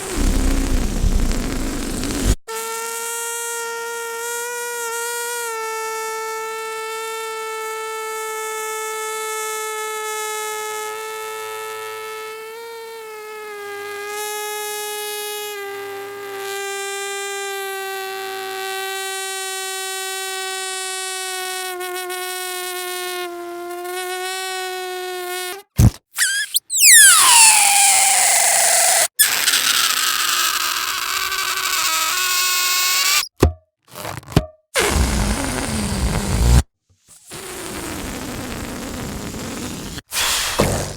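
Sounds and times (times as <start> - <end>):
brief hiss: 0.0 - 2.4, 34.8 - 40.9
buzzy sustained tone: 0.0 - 2.4
short low thump: 0.0 - 2.4
tone sliding down from high: 0.0 - 2.4.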